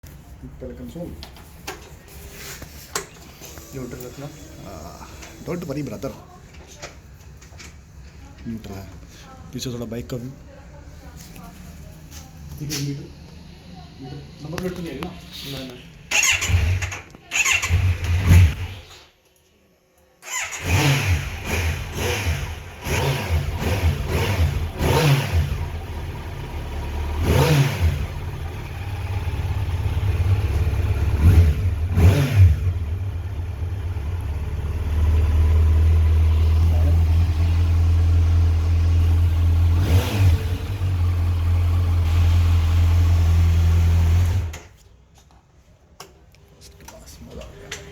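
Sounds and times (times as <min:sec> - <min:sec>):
motorcycle engine revving: 0:16.1 - 0:18.9, 0:20.2 - 0:44.7.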